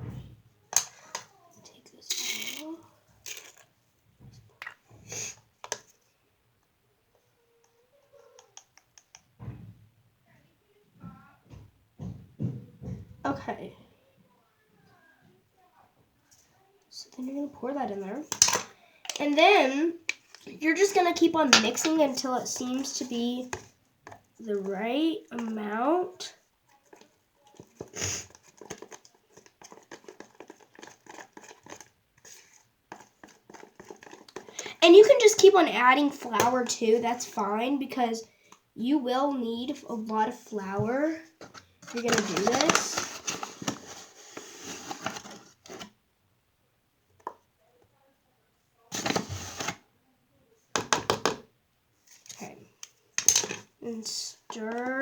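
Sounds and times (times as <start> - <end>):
kitchen utensils clicking and knocking: 20.1 - 22.0, 53.2 - 53.7
utensil scraping bowl: 26.8 - 35.5, 41.4 - 45.9.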